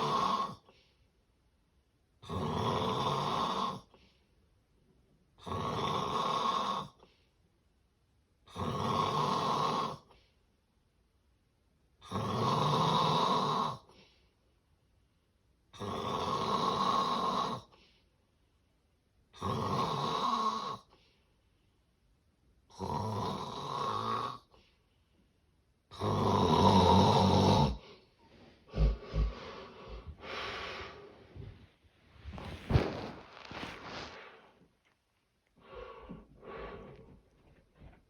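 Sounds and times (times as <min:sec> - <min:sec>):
heavy snoring: 0:08.5 - 0:10.0, 0:26.0 - 0:27.8
snorts and gasping breaths: 0:27.6 - 0:34.6.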